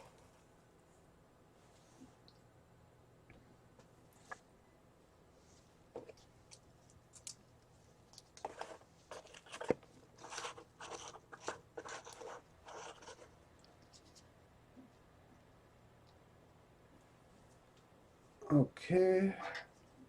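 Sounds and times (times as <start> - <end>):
crinkling and rustling: 5.5 - 14.3.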